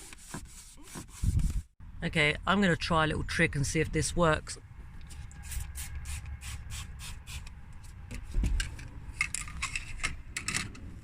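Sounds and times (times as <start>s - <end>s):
rubbing strokes on car trim: 0.0s - 1.7s.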